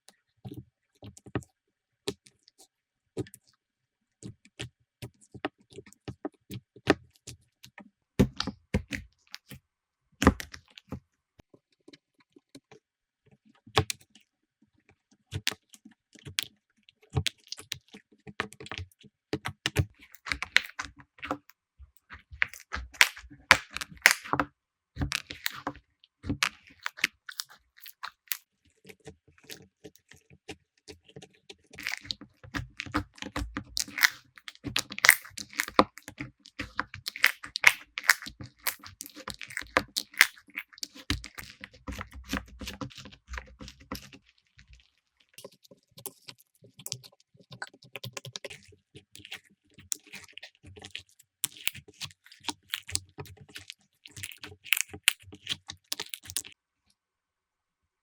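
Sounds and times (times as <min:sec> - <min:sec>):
slime squished by hand: 0:19.8 - 0:24.4, 0:25.0 - 0:28.4, 0:31.8 - 0:47.0, 0:47.6 - 0:56.6.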